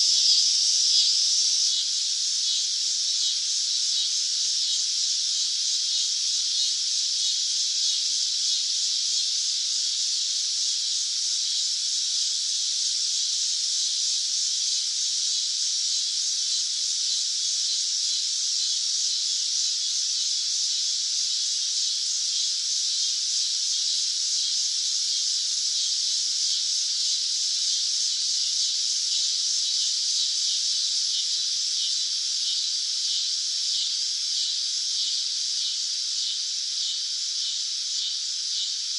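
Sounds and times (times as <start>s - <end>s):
cicadas buzzing: 0.0s - 38.9s.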